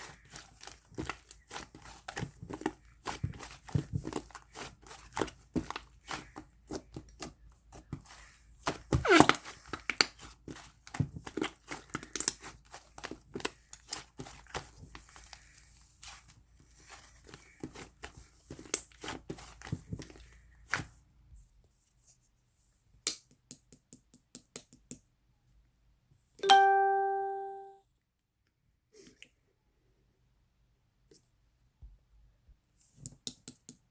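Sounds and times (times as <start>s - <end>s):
bell-like chime: 26.4s - 27.8s.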